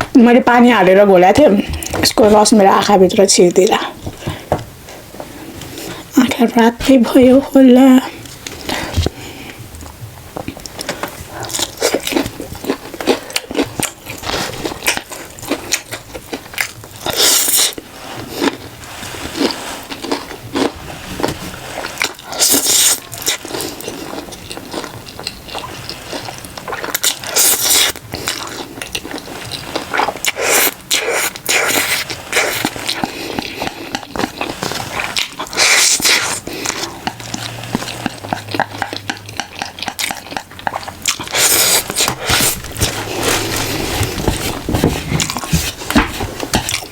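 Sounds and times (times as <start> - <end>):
person chewing with wet clicks: 8.2 - 20.8, 21.8 - 43.8, 46.4 - 46.9.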